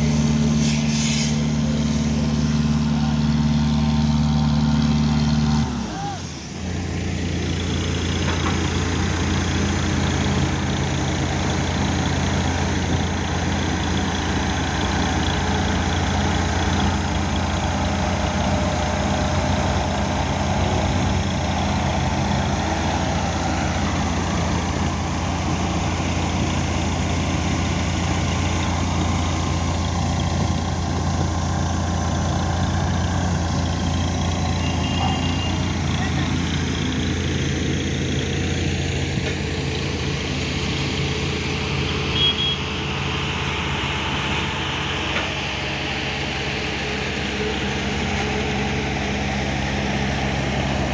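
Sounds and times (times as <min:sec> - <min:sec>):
engine running steadily: 0:00.0 - 0:50.9.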